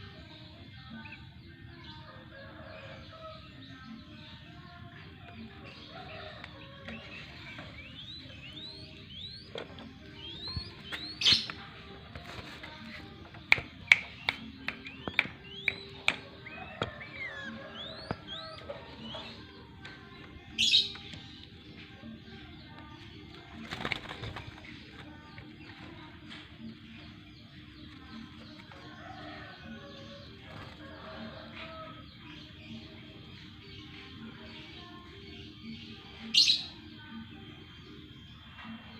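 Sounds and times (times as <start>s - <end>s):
birds chirping: 0.0s - 38.9s
bulbul singing: 0.0s - 38.9s
sharp bird chips: 13.4s - 18.6s.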